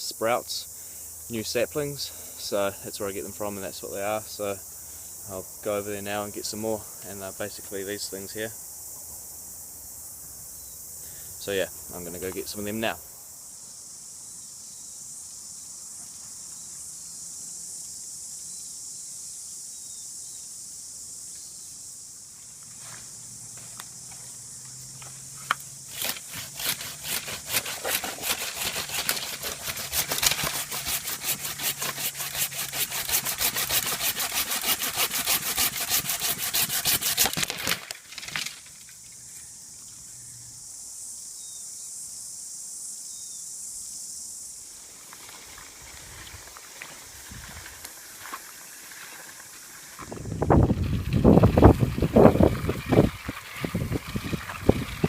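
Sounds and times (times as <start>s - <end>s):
high insect hiss: 0.0s - 55.0s
saw cutting wood: 25.9s - 37.8s.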